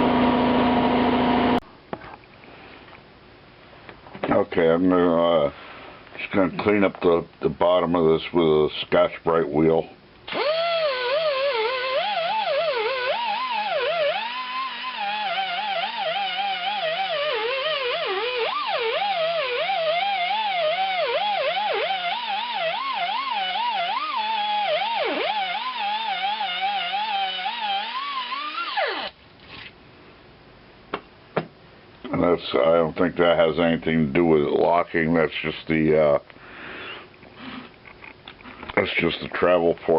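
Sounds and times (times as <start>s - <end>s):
power tool grinding metal: 0.0s - 1.6s, 10.3s - 29.2s.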